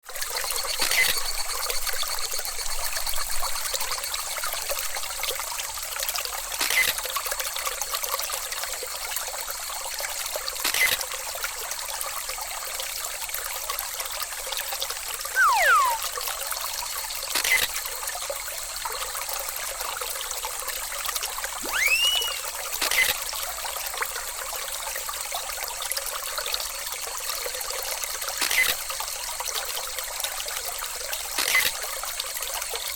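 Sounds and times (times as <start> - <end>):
short whistling glides: 15.4 - 16.1, 21.6 - 23.1.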